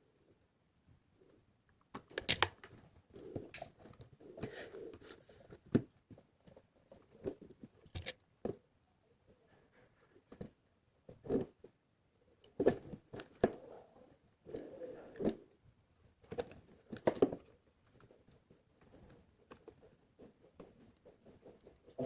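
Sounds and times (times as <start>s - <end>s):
small parts clicking and tapping: 1.9s - 2.8s, 7.9s - 8.2s.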